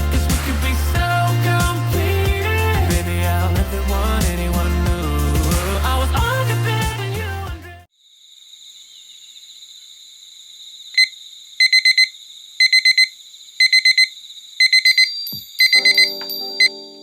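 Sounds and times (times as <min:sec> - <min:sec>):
digital alarm beeping: 0:11.0 - 0:16.8
faint steady high tone: 0:14.9 - 0:17.0.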